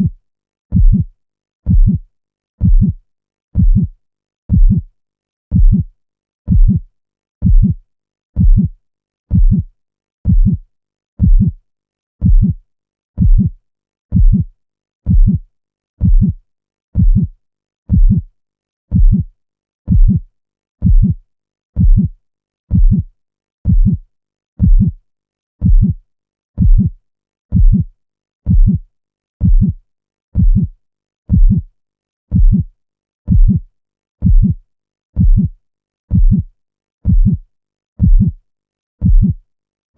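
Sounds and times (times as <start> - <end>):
heartbeat thumping: 0.7 - 1.1, 1.7 - 2.0, 2.6 - 3.0, 3.6 - 3.9, 4.5 - 4.9, 5.5 - 5.9, 6.5 - 6.8, 7.4 - 7.8, 8.4 - 8.7, 9.3 - 10.6, 11.2 - 11.6, 12.2 - 12.6, 13.2 - 13.5, 14.1 - 14.5, 15.1 - 15.4, 16.0 - 16.4, 17.0 - 17.3, 17.9 - 18.2, 18.9 - 19.3, 19.9 - 20.2, 20.8 - 21.2, 21.8 - 22.1, 22.7 - 23.0, 23.6 - 24.0, 24.6 - 25.0, 25.6 - 26.0, 26.6 - 26.9, 27.5 - 27.9, 28.5 - 28.8, 29.4 - 29.8, 30.4 - 30.7, 31.3 - 31.6, 32.3 - 32.7, 33.3 - 33.6, 34.2 - 34.6, 35.2 - 35.5, 36.1 - 37.4, 38.0 - 38.4, 39.0 - 39.4.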